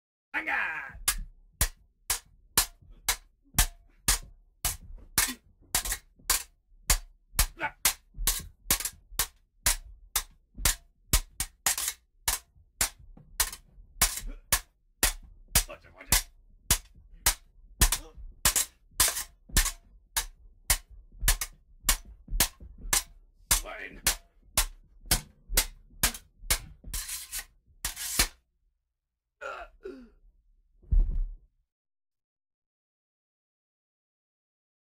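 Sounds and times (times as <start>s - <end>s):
metal blades clashing: 1.0s - 28.4s.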